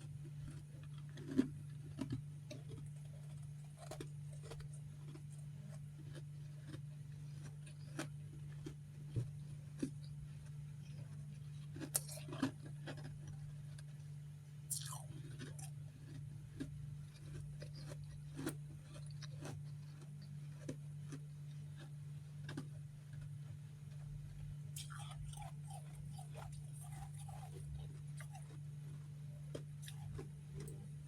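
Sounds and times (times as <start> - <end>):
steady low hum: 0.0 - 31.0
crunching frost chunks: 11.5 - 13.8, 24.8 - 28.7.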